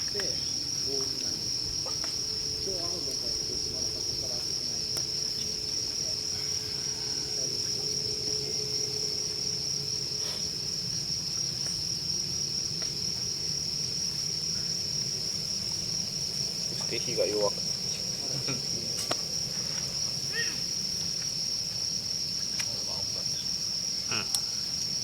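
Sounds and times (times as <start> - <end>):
crickets trilling: 0.0 - 25.0.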